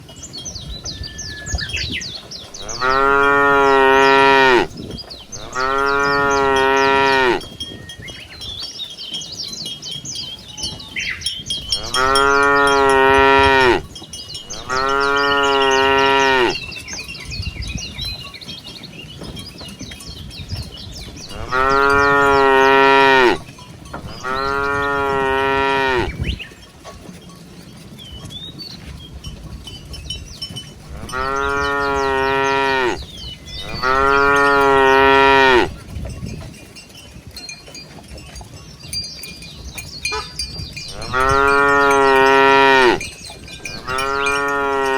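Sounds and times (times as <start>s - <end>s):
faint high clinking: 0.0s - 44.9s
cow mooing: 2.6s - 7.5s, 11.7s - 13.9s, 14.5s - 16.6s, 21.3s - 26.2s, 30.9s - 35.8s, 40.1s - 44.9s.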